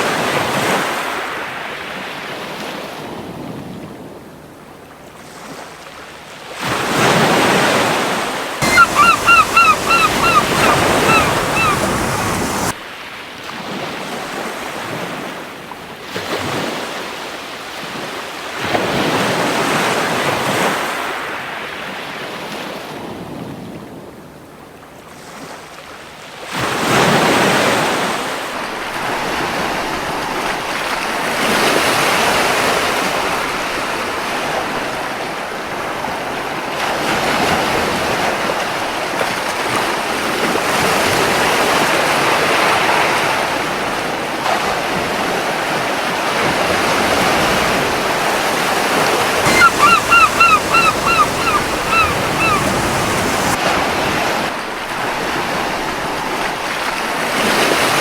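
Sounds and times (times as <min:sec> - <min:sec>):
ocean surf breaking: 0:08.6 - 0:12.8, 0:46.8 - 0:55.6.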